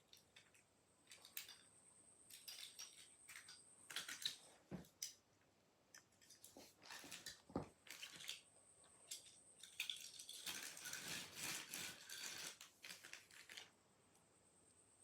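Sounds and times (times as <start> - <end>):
packaging rustling: 10.1 - 13.8.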